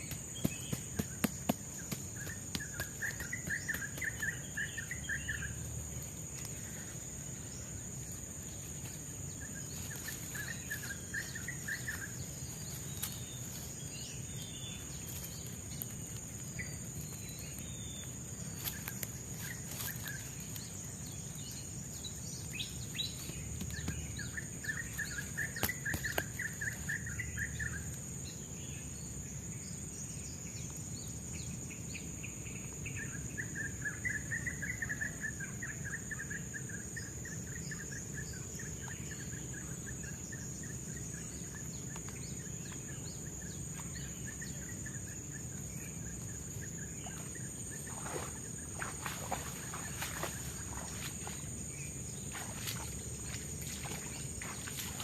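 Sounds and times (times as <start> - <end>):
high-pitched insect drone: 43.4 - 55.0.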